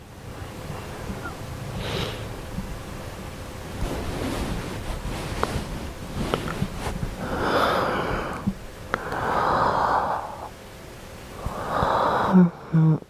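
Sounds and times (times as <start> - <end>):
person breathing heavily: 1.8 - 2.4, 7.2 - 10.6, 11.3 - 13.0.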